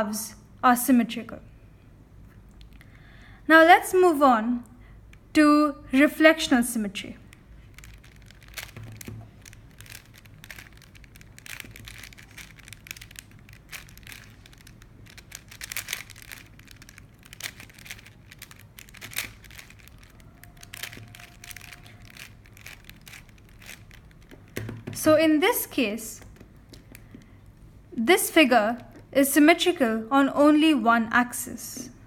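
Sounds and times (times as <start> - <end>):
puzzle cube clicking and scraping: 7.2 - 27.4.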